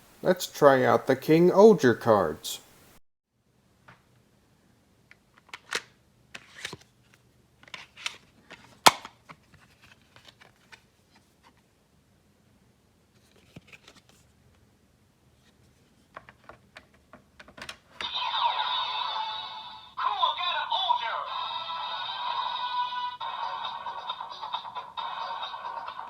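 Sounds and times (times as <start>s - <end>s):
loud plastic click: 5.4s - 5.9s
cards rustling: 7.7s - 11.2s, 13.2s - 14.3s.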